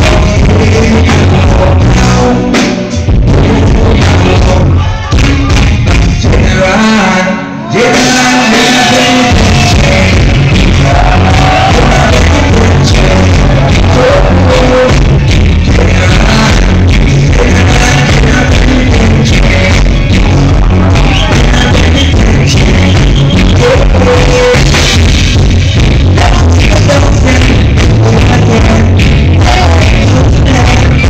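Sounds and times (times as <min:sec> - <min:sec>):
person singing: 0:00.0 - 0:25.0, 0:26.0 - 0:31.0
reggae band playing: 0:00.0 - 0:31.0.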